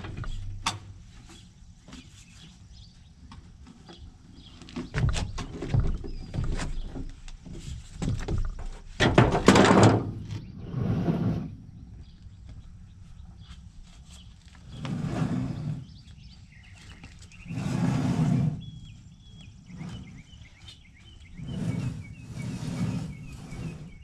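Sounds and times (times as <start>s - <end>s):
knocks and thuds: 4.9s - 10.3s
soft scraping noises: 10.3s - 11.6s, 13.1s - 24.0s
loud scraping clatter: 17.4s - 18.7s, 21.4s - 24.0s.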